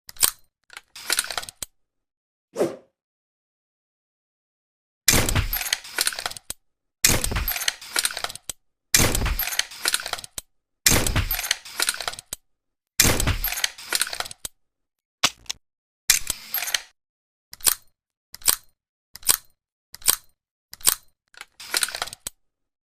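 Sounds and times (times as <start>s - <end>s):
rattle of small clicks: 5.3s - 10.5s, 17.6s - 22.4s.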